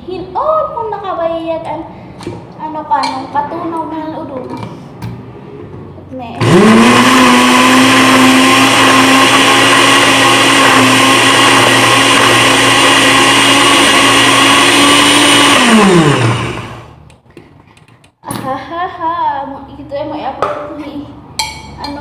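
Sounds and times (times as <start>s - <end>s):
blender running: 6.4s - 17.0s.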